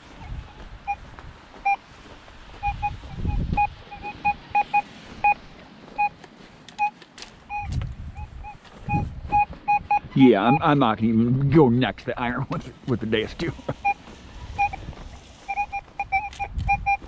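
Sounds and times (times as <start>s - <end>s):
metal detector short beeps: 2.6s - 5.4s, 6.8s - 10.7s, 13.7s - 14.8s, 15.4s - 17.0s.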